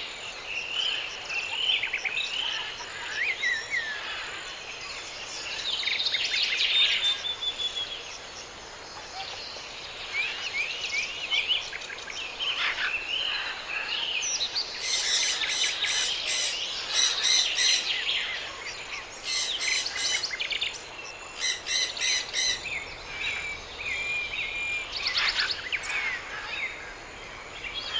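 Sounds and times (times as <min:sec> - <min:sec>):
background hiss: 0:00.0 - 0:27.9
birds chirping and singing: 0:09.0 - 0:27.9
rapid bird trills: 0:21.3 - 0:27.9.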